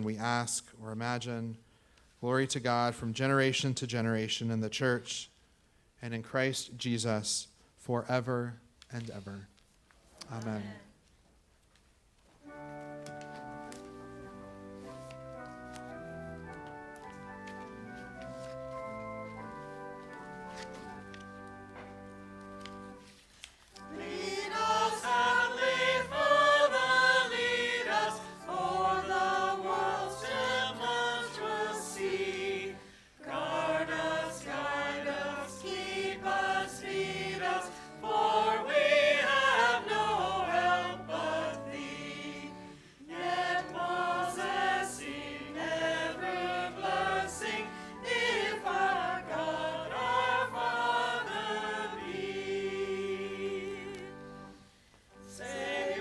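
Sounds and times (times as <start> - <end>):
group singing a hymn: 23.7 - 56.0.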